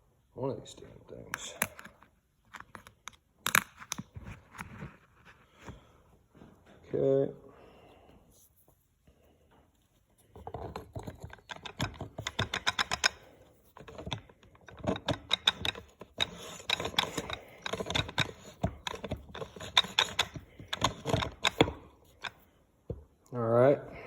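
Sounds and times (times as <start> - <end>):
metal clutch drums clicking and rattling: 10.6 - 22.5.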